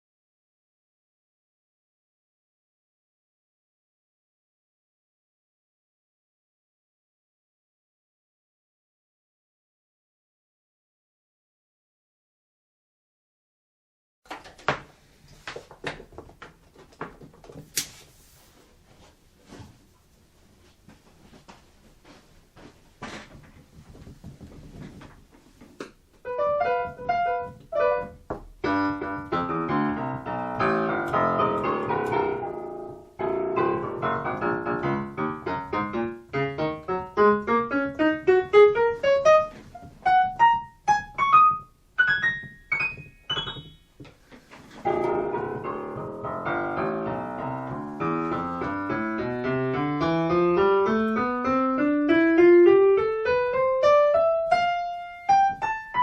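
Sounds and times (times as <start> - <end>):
piano chords and scale runs: 26.2 - 44.1, 44.8 - 56.0.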